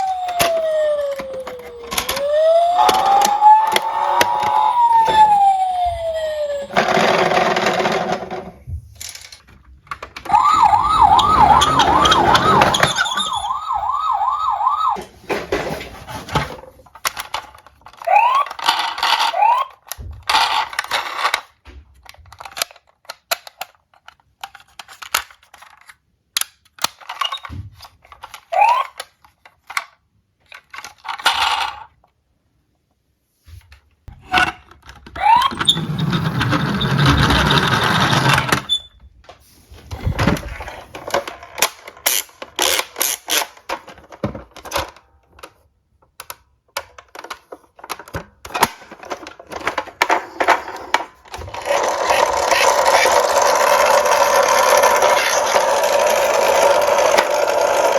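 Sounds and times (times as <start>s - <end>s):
toy cars clicking and clacking: 0.0s - 15.0s, 16.8s - 32.2s, 34.1s - 38.8s, 40.1s - 57.9s.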